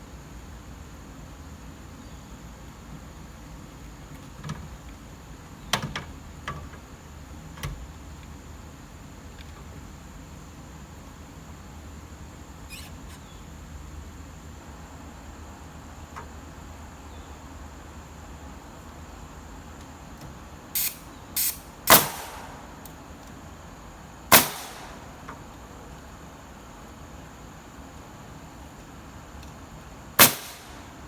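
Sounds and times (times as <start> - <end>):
brief hissy bursts: 12.7 - 12.9, 20.8 - 22.8, 24.3 - 25.3.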